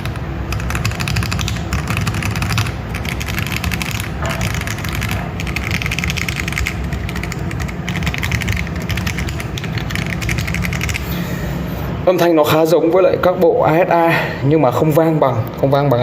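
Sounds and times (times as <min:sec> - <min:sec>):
fast mechanical keyboard typing: 0:00.0 - 0:11.1.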